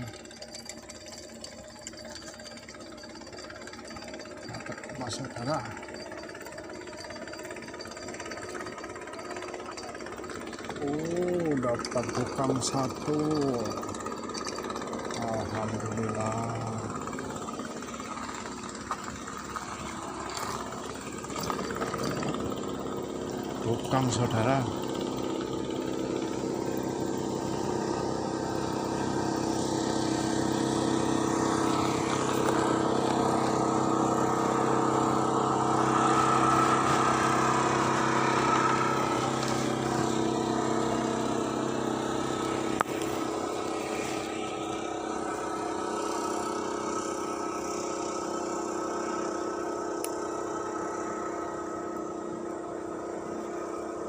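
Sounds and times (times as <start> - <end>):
engine passing by: 26.6 - 54.0.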